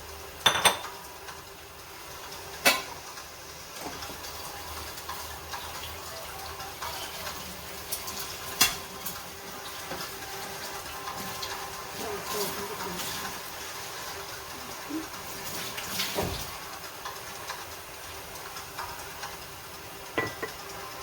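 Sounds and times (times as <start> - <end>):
food sizzling in a pot: 0.0 - 21.0
utensil knocking against pot: 20.2 - 20.6.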